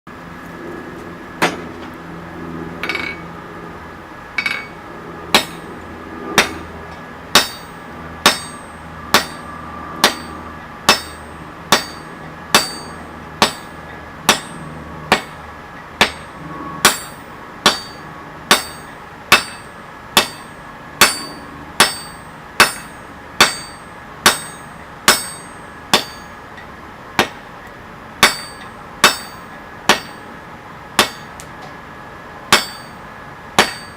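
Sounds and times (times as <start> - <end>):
hammer blows on anvil: 4.4 - 5.7, 7.3 - 15.4, 16.0 - 26.4, 28.2 - 30.2, 32.5 - 33.0, 33.6 - 33.9.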